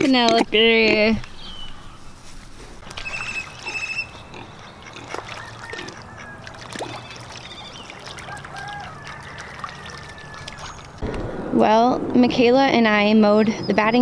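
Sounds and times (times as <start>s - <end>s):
bird calls: 0.7s - 2.2s, 2.8s - 11.0s
faint farmyard animal calls: 3.0s - 10.8s.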